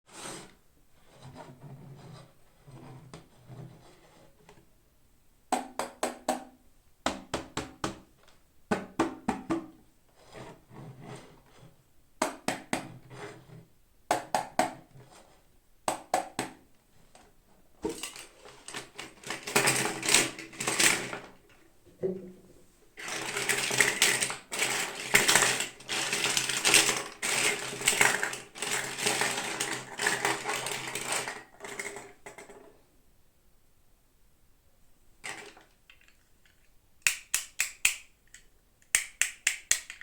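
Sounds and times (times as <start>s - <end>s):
packaging sharp clicks and taps: 35.3s - 40.0s.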